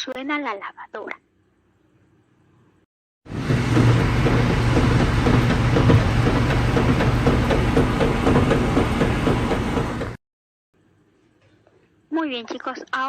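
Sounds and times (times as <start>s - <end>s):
washing machine drum churning: 3.3s - 10.2s
washing machine motor hum: 3.3s - 10.2s.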